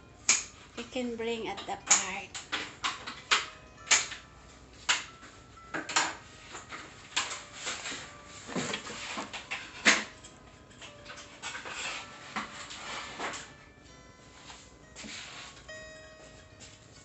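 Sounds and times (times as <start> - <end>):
rustling: 10.9 - 17.0.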